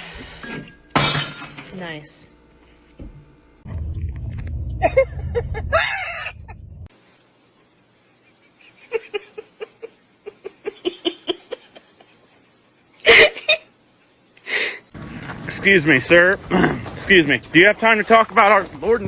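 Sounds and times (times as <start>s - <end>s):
low rumble: 3.6s - 6.9s.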